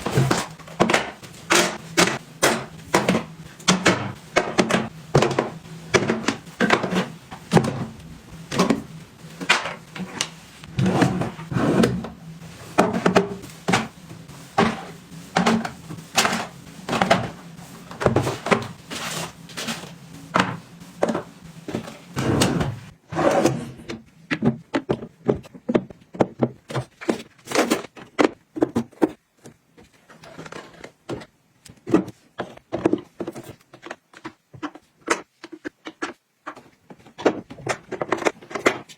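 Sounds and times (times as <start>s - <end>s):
small items tapping and clicking: 24.3s - 38.9s.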